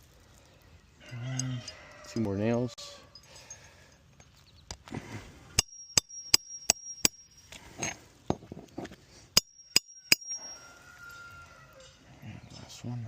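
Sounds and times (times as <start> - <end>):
hammer striking nails: 5.6 - 7.3, 9.4 - 10.4.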